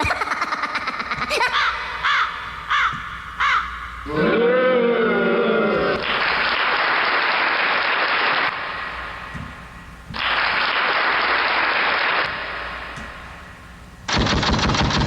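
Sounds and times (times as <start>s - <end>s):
canned applause: 5.9s - 8.8s.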